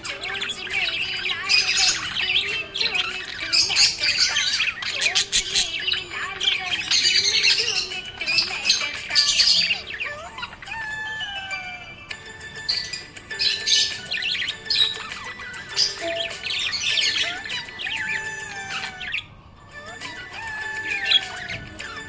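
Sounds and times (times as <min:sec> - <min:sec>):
budgerigars chirping: 0:00.0 - 0:22.0.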